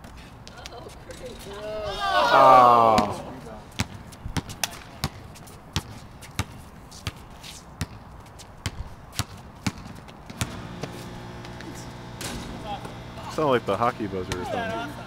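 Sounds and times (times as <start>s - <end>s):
basketball bouncing on gym floor: 3.8s - 5.2s, 5.8s - 7.2s, 7.8s - 11.0s
steady low buzzer: 10.3s - 15.0s.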